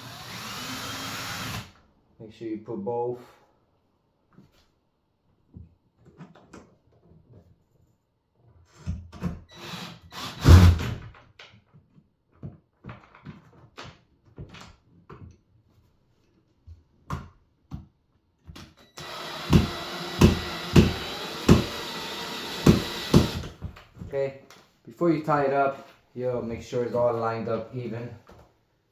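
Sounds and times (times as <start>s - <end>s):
small power driver running: 19.0s - 23.5s.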